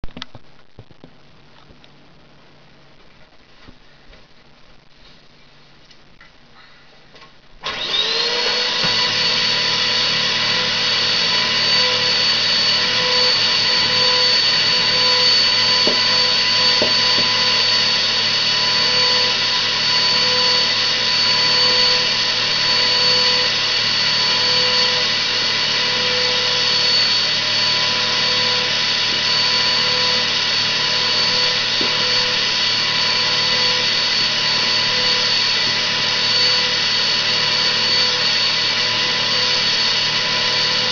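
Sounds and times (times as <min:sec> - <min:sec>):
vacuum cleaner motor whine: 0:07.6 - 0:40.9.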